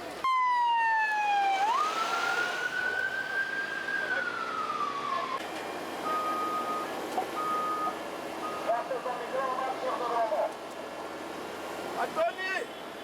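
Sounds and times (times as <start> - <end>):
emergency vehicle siren wailing: 0.2 - 9.0
reversing beeper beeps: 6.0 - 8.7.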